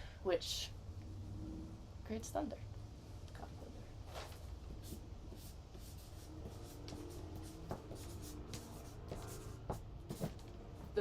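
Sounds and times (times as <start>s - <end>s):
pen scratching on paper: 4.8s - 10.3s.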